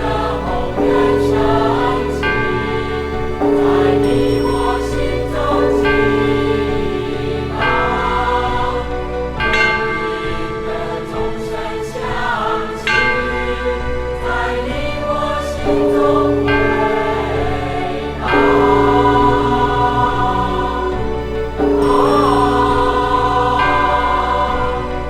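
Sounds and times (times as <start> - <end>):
choir singing sustained chords: 0.0 - 25.0
steady musical accompaniment: 0.0 - 25.0.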